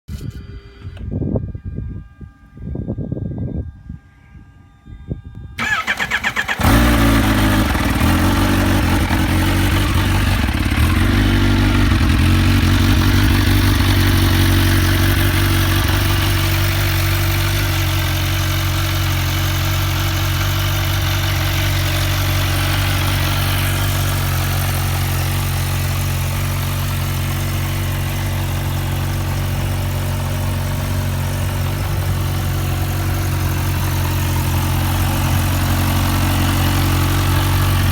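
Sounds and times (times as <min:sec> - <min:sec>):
starter cranking: 0:05.6 - 0:11.1
motorcycle engine idling: 0:05.6 - 0:37.9.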